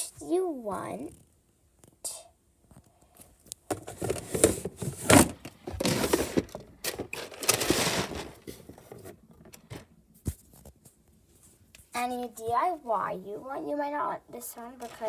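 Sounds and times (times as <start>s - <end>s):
rustling and scraping of objects: 2.6s - 13.4s, 14.3s - 15.0s.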